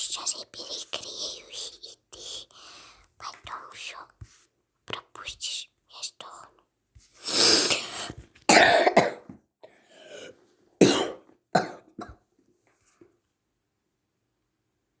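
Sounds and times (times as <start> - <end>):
person coughing: 8.5 - 9.4, 10.8 - 12.2.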